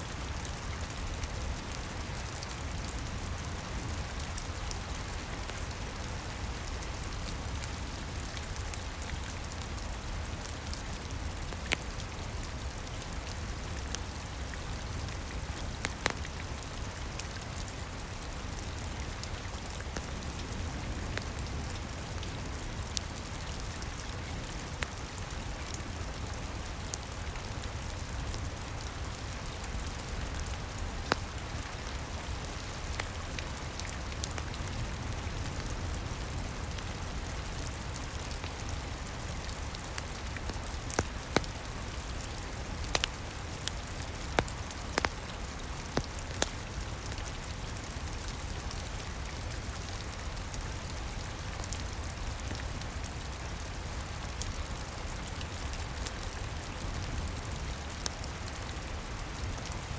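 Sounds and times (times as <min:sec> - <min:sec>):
steady rain: 0:00.0 - 0:59.9
crackling wood fire pops: 0:38.4 - 0:47.2.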